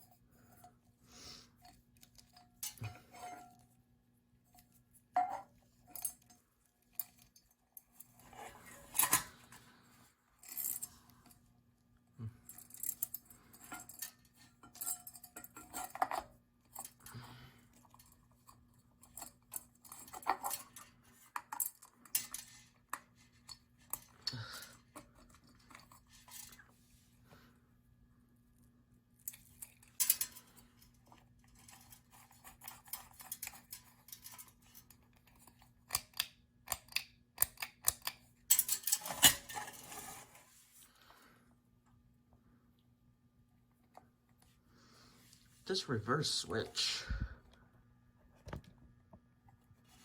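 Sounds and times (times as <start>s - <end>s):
metal parts clinking and rattling: 5.2s - 9.6s, 10.4s - 11.0s, 12.4s - 24.1s, 29.2s - 40.4s.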